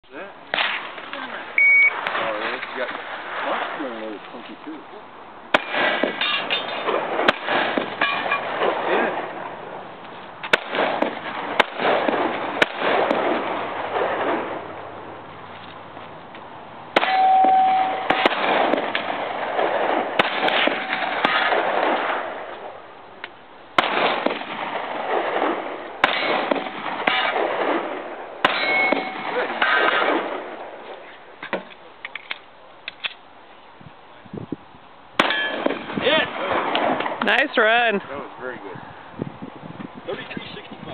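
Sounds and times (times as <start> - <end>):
pistol shots: 5.5 - 9.4, 10.4 - 14.6, 17.0 - 22.5, 23.8 - 30.6, 35.2 - 37.2
steel plate clanging: 6.1 - 6.9, 8.0 - 8.5, 17.0 - 18.3, 28.5 - 29.9.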